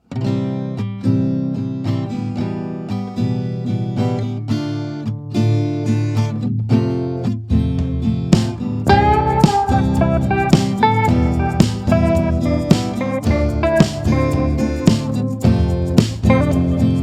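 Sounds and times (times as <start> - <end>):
acoustic guitar chords: 0.0 - 17.0.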